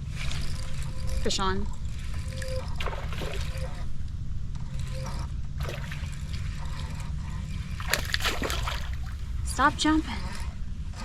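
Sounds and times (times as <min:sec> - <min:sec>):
fish splashing at water surface: 0:07.8 - 0:09.3.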